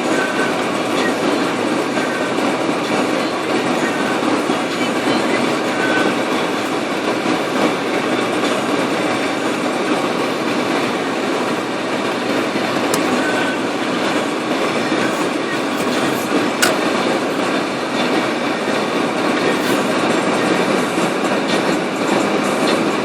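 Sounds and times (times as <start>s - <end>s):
road and tyre noise: 4.9s - 20.1s
sharp clicks: 15.1s - 17.5s.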